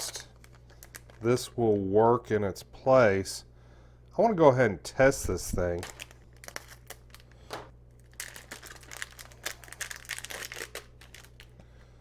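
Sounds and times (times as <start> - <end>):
packaging crinkling: 0.0 - 1.3, 5.6 - 11.6.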